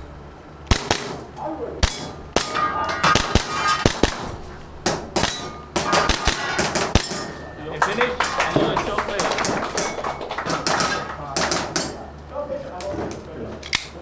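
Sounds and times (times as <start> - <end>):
airsoft pistol shots: 0.7 - 7.4, 9.2 - 12.0
steel targets clanging: 0.7 - 14.0.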